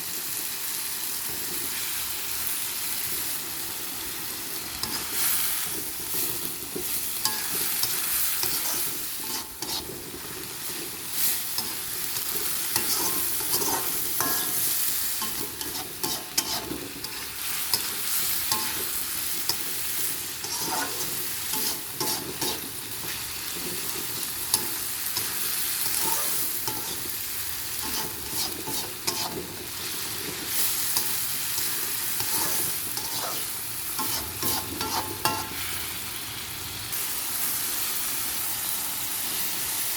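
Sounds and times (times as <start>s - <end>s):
food sizzling in a pan: 0.0s - 39.9s
spatula scraping a pan: 4.7s - 35.7s.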